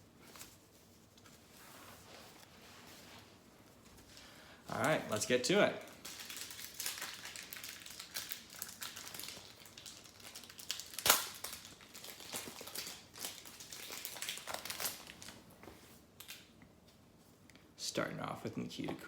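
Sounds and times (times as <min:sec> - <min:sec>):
wrapper crinkling and tearing: 0:04.1 - 0:15.4.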